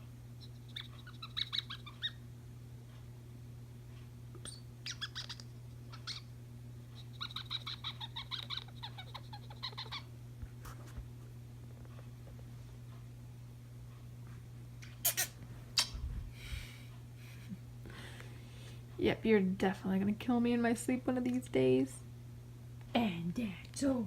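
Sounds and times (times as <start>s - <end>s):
cat chattering: 0.4s - 2.2s, 4.8s - 6.3s, 7.0s - 10.1s.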